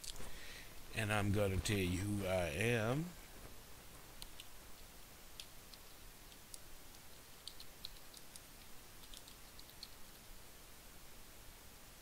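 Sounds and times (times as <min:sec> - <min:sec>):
room hiss: 0:00.0 - 0:12.0
keyboard typing: 0:05.4 - 0:10.2.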